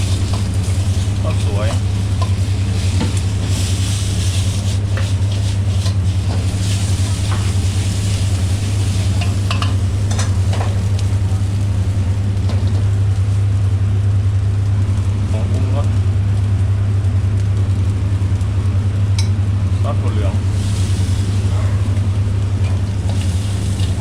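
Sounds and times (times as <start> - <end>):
spatula scraping a pan: 0.0 - 8.2
food sizzling in a frying pan: 0.0 - 13.8, 20.4 - 24.0
low hum: 5.3 - 24.0.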